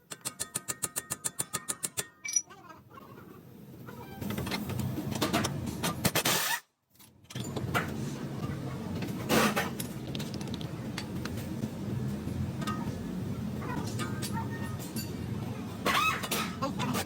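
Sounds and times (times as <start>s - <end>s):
metallic clinks and clatter: 0.1s - 2.5s
steady noisy background: 7.3s - 17.0s.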